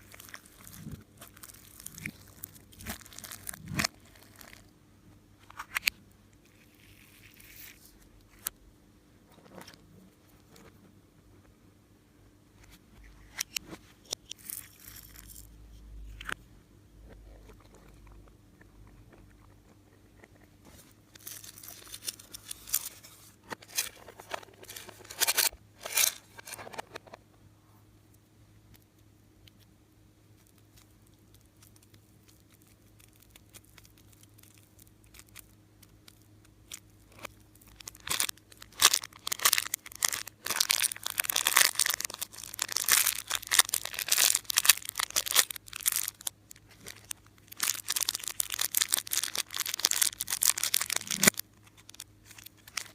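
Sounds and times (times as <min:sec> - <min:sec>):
slime crackling: 0:00.0 - 0:04.7, 0:30.4 - 0:52.9.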